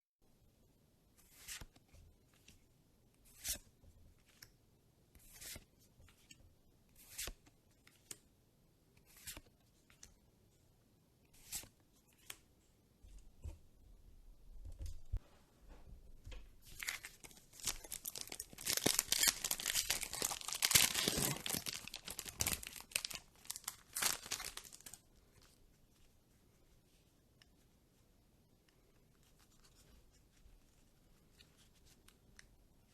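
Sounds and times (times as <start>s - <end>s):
foil wrapper tearing: 16.8s - 24.9s
foil wrapper crinkling: 16.8s - 25.0s.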